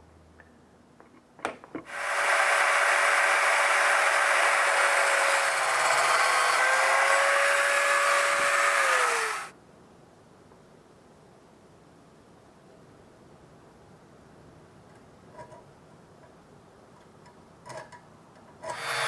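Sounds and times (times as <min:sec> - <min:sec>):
motor whine winding down: 0:01.9 - 0:09.5
power tool hissing on steel: 0:01.9 - 0:09.5, 0:18.7 - 0:19.0.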